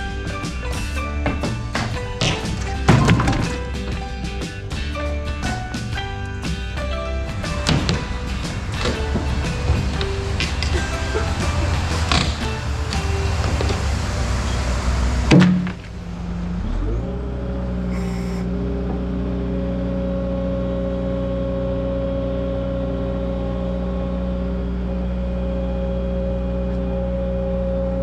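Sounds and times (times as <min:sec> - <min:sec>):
motor humming: 0:07.0 - 0:17.1, 0:17.8 - 0:19.0.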